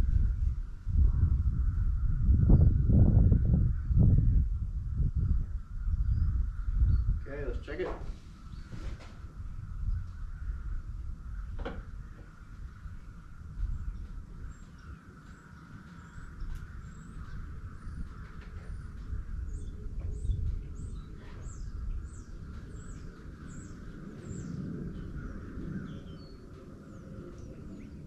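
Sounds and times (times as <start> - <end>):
low outdoor rumble: 0.0 - 28.0
bird chirping: 11.3 - 28.0.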